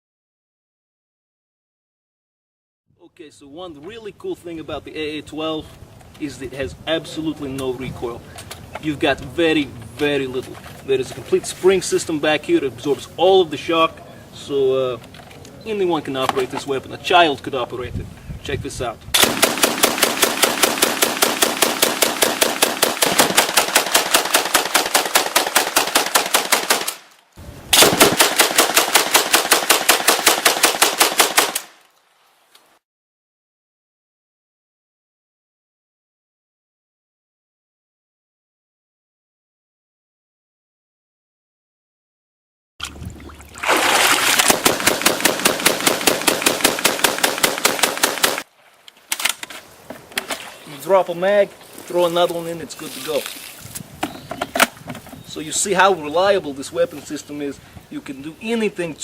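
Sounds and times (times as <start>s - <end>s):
automatic shotgun firing: 19.2s - 27.1s, 27.7s - 31.8s, 44.4s - 48.4s.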